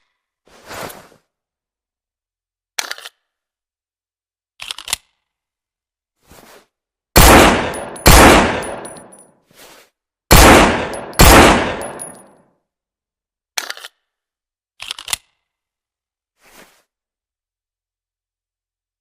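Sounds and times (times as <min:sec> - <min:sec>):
pistol shots with echo: 0:07.2 - 0:09.1, 0:10.3 - 0:12.2.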